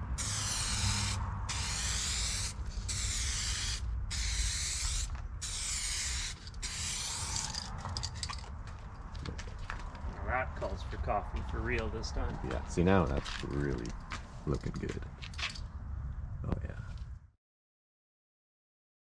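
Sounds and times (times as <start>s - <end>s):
aerosol spray can hissing: 0.2s - 8.4s.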